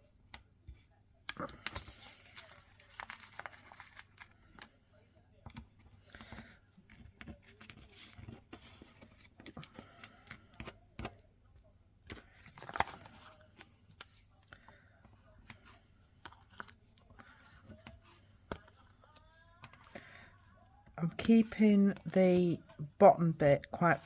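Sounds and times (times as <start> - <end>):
paper rustling and clicks: 1.3 - 4.7, 12.1 - 14.3.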